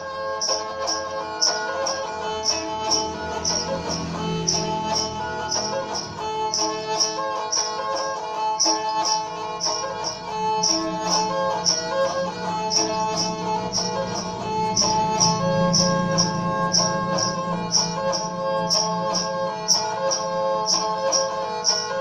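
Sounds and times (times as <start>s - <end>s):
high percussion tick: 0.0s - 22.0s
ringtone melody: 0.0s - 22.0s.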